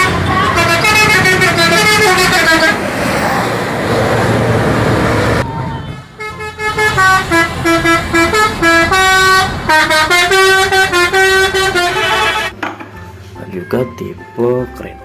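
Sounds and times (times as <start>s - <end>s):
musical vehicle horn playing tune: 0.0s - 2.8s, 5.8s - 12.6s
vehicle rumble: 0.0s - 13.4s.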